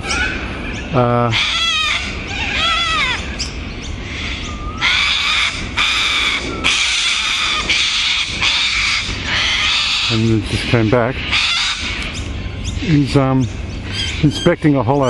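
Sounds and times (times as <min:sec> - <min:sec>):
wavering bird squawk: 0:00.0 - 0:15.0
corellas screeching: 0:04.2 - 0:12.0.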